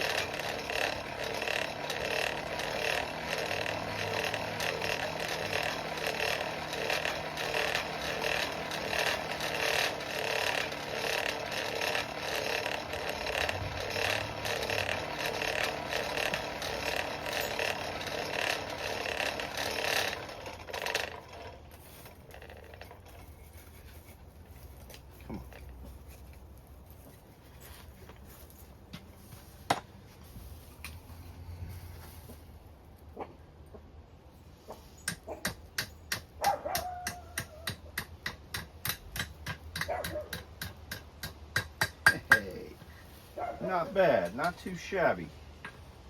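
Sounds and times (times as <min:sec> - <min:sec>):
forge blower whirring: 0:00.0 - 0:23.2.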